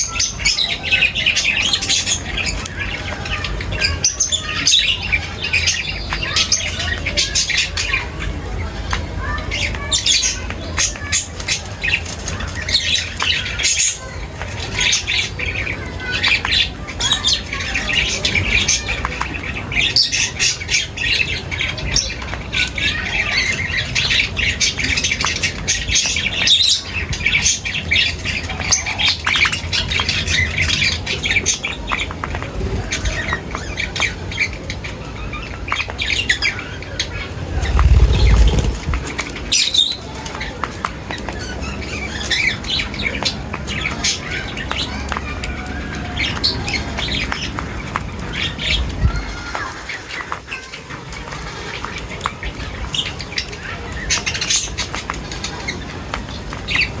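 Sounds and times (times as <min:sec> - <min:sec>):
birds chirping and squawking: 0:00.0 - 0:08.6, 0:33.0 - 0:40.6
low rumble: 0:37.4 - 0:39.0.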